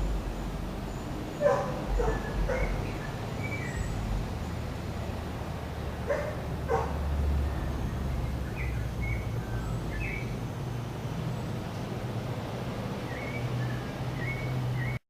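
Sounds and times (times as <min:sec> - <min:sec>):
bird chirps: 0:00.3 - 0:04.1, 0:07.4 - 0:10.4, 0:13.0 - 0:15.0
dog barking: 0:01.4 - 0:02.9, 0:06.0 - 0:07.0.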